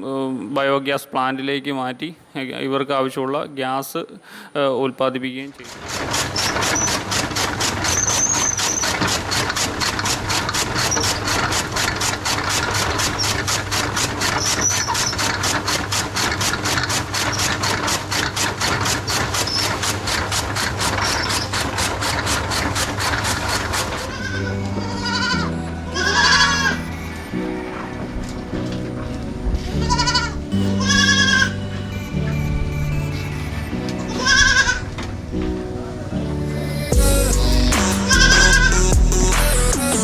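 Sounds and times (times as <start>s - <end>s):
machine clattering: 5.6s - 25.3s
goats bleating: 23.9s - 28.6s, 29.7s - 31.6s, 33.8s - 34.9s, 38.1s - 38.9s.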